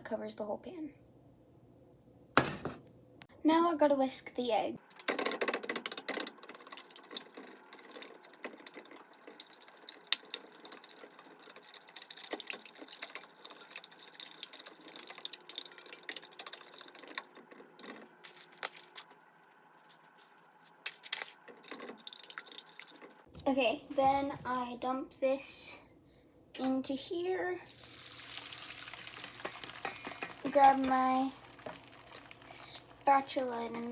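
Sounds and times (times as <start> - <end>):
eggs sloshing: 21.6 - 23.3, 27.6 - 33.9.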